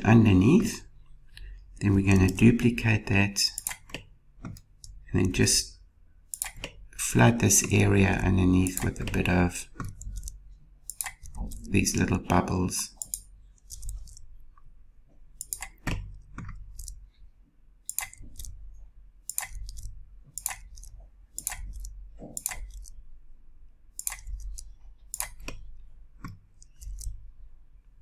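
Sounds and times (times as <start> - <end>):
mouse and keyboard clicks: 3.5 - 5.0, 6.3 - 6.8, 7.4 - 14.4, 15.4 - 17.0, 17.9 - 18.6, 19.2 - 23.0, 23.9 - 27.2.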